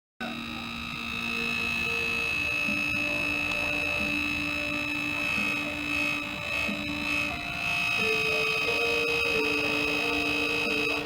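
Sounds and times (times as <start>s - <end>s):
laptop fan high-pitched whine: 0.2s - 11.0s
low humming tones: 0.2s - 11.0s.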